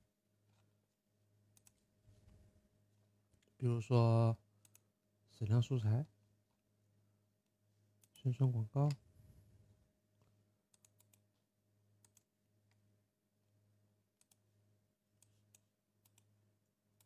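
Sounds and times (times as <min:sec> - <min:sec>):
computer mouse clicks: 0:01.5 - 0:01.8, 0:04.6 - 0:04.9, 0:10.7 - 0:11.3, 0:12.0 - 0:12.8, 0:14.2 - 0:14.4, 0:15.2 - 0:16.3.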